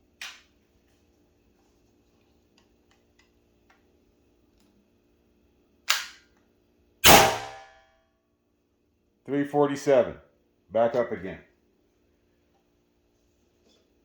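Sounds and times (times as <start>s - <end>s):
air rifle shot: 7.0s - 7.7s.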